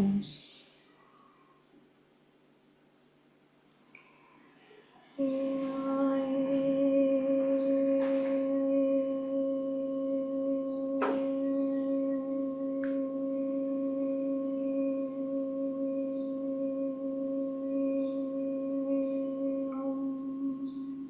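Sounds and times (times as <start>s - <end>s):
singing bowl ringing: 5.2s - 21.0s.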